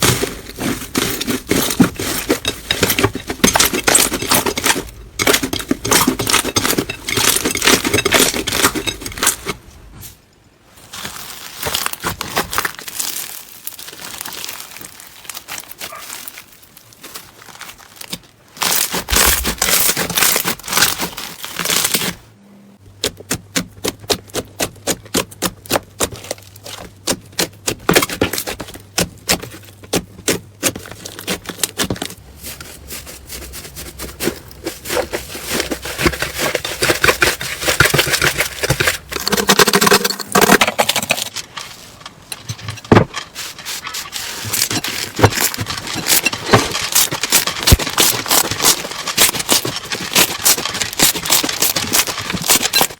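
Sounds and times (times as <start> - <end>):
slime crackling and popping: 11.2 - 22.0.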